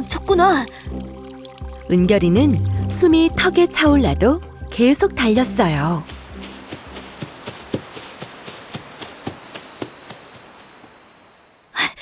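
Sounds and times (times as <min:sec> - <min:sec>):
running footsteps on ground: 0:05.5 - 0:11.0.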